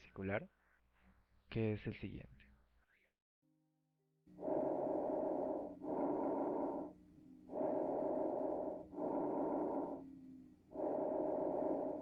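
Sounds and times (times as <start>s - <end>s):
soft rushing breath sounds: 4.3s - 12.0s.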